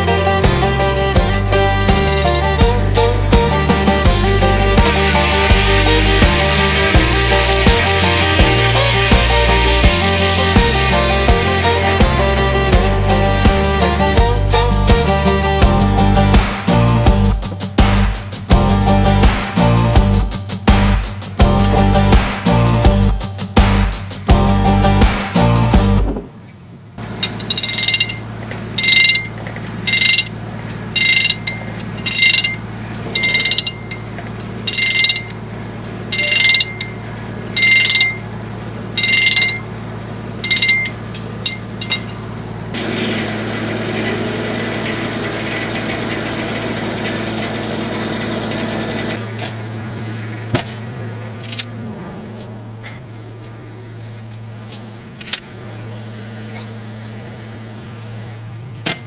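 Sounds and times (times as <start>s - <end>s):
short ringing saw bursts: 0.0s - 13.4s, 27.0s - 42.8s
sawmill engine hum: 0.0s - 59.0s.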